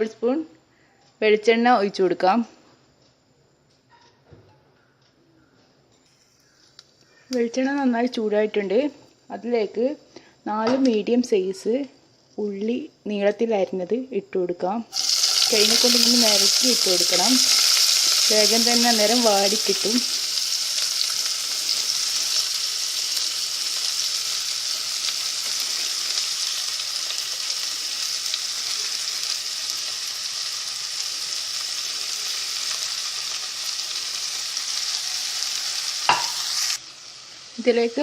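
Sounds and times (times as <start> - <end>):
onions sizzling in a pan: 14.9 - 38.0.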